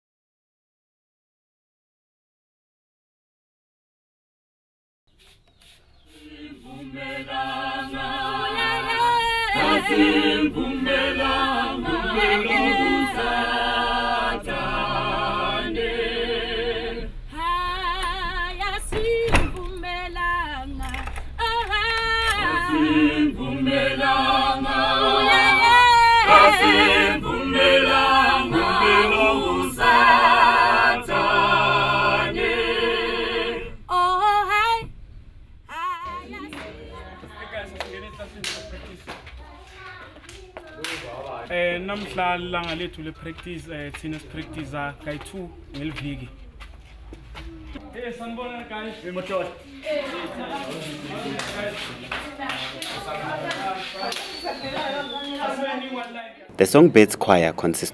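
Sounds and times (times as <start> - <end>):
mixed choir singing a cappella: 6.0 - 34.9, 35.7 - 38.4.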